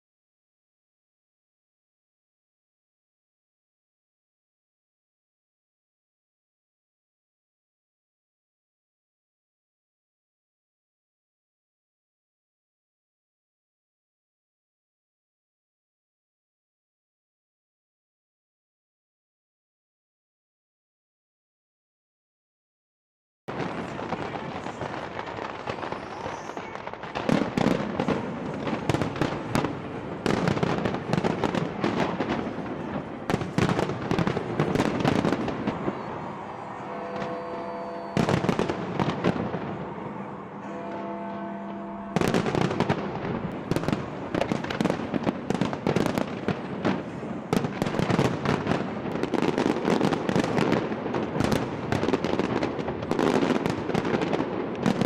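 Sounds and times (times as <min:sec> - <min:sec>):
fireworks bangs and crackles: 0:23.5 - 0:55.0.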